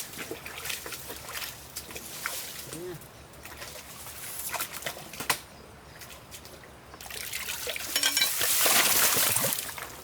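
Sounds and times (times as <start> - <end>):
water trickling and pouring: 7.0 - 10.0.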